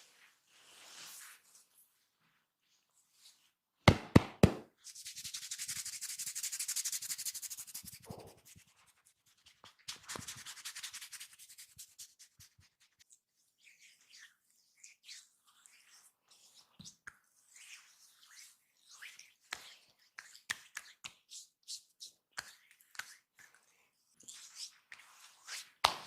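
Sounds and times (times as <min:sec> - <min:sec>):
fingers scratching scalp and hair: 0:04.9 - 0:13.1.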